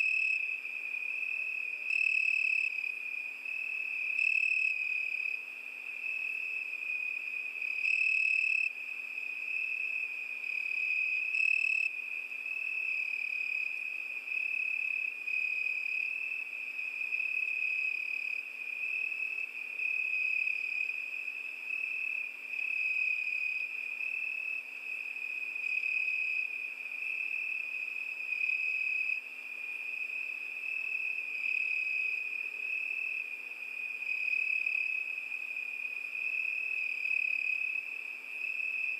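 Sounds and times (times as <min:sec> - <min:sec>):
crickets trilling: 0:00.0 - 0:38.9.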